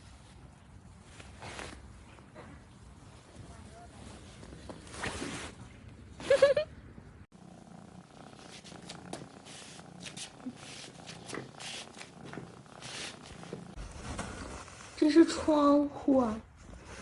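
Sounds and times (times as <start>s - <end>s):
cat purring: 7.3s - 15.8s.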